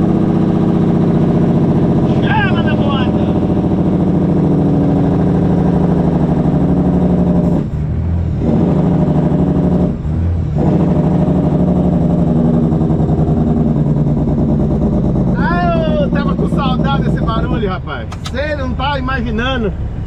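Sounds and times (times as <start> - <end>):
diesel engine brake rattling: 16.1 - 19.2.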